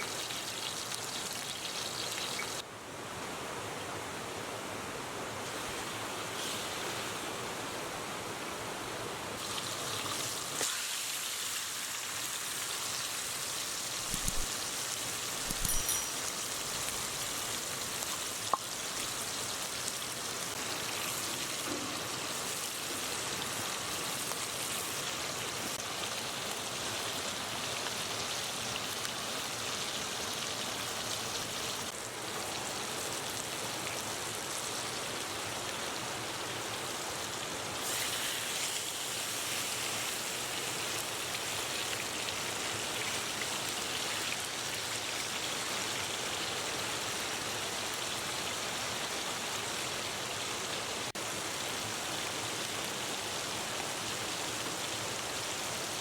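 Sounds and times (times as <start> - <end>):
sharp click: 14.0 - 14.5, 15.4 - 16.1.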